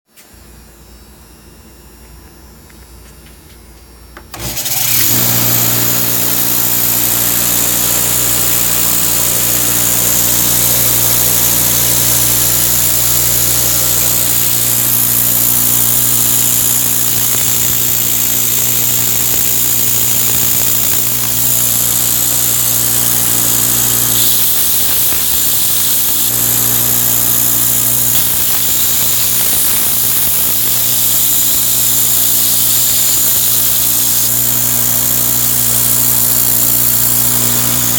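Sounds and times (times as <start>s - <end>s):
belt grinder motor hum: 4.3s - 37.9s
abrasive belt hiss: 24.1s - 35.2s.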